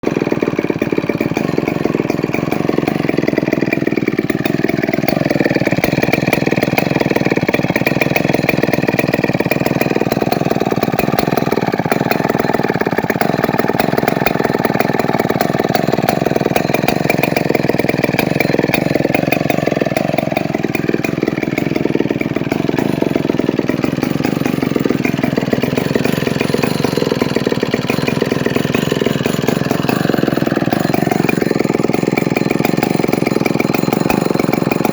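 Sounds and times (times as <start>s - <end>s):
chainsaw engine running: 0.0s - 34.9s.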